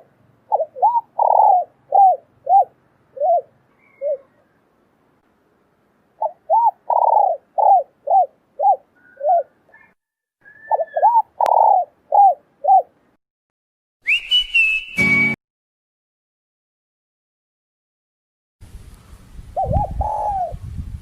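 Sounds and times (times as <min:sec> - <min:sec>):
doves cooing: 0:00.0 - 0:04.5, 0:06.2 - 0:13.0, 0:19.6 - 0:20.6.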